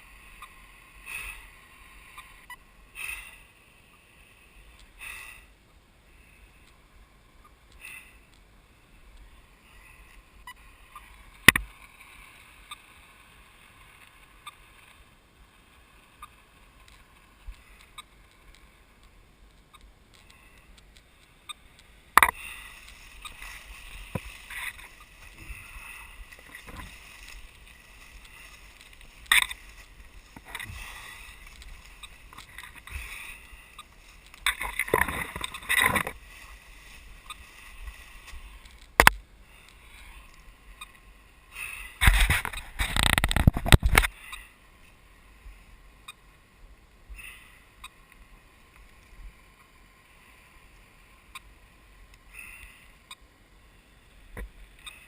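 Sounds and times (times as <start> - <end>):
footsteps in dry leaves: 22.6 - 32.9
twigs snapping: 26.3 - 33.1.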